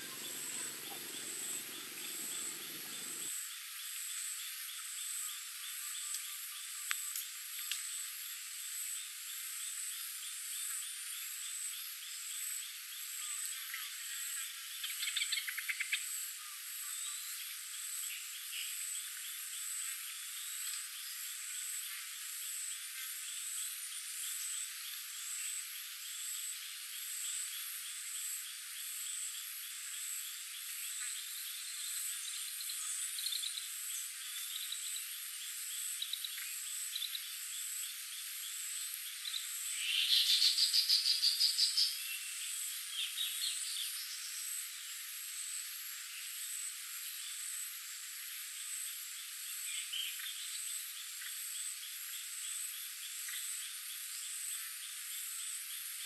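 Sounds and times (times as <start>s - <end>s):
rapid pulsed animal call: 0.0s - 3.3s.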